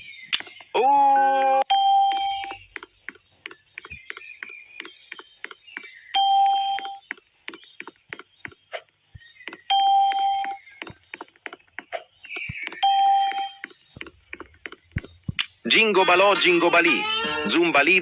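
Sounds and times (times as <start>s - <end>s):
quick irregular clicks: 0.0s - 0.7s, 2.1s - 15.7s
electronic beep tone: 1.7s - 2.6s, 6.2s - 7.0s, 9.7s - 10.6s, 12.8s - 13.6s.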